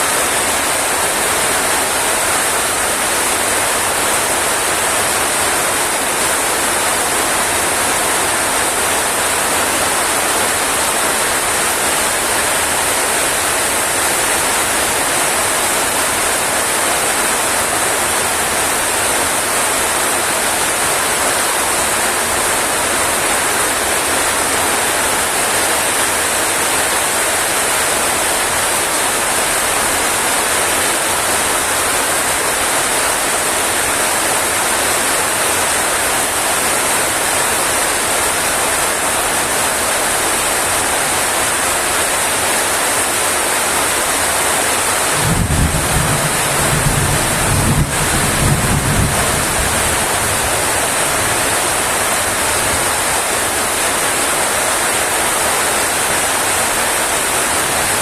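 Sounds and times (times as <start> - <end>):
heavy rain hissing: 0.0 - 58.0.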